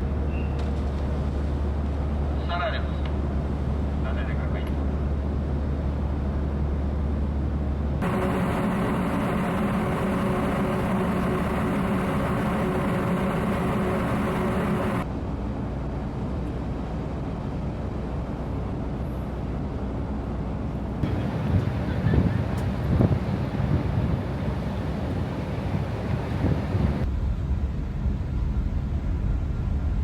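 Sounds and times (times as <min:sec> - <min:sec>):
ship engines droning: 0:00.0 - 0:15.3, 0:21.0 - 0:30.0.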